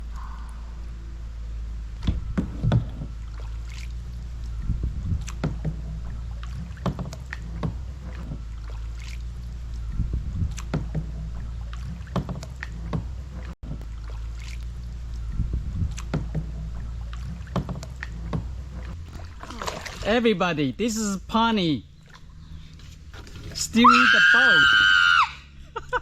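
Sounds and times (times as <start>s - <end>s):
steady low rumble: 0.0s - 23.6s
paddles splashing: 2.8s - 4.6s, 5.2s - 9.8s, 10.4s - 15.3s, 15.9s - 20.7s, 21.4s - 25.1s
paddles knocking against boat: 4.7s - 8.8s, 10.0s - 14.0s, 15.4s - 19.3s.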